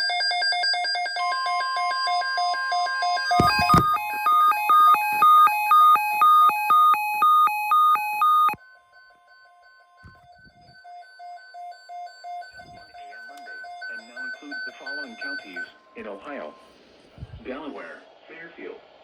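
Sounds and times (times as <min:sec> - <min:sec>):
rapid electronic beeping: 0:03.0 - 0:08.6, 0:09.5 - 0:16.7
steady high tone: 0:03.1 - 0:17.7
alert beeps stepping in pitch: 0:03.3 - 0:08.6.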